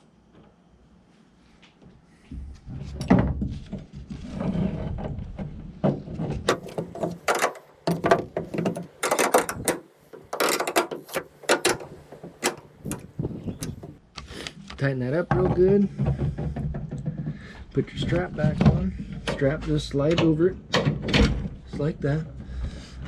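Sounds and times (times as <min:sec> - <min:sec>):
hand ratchet clicking: 0:06.5 - 0:13.9.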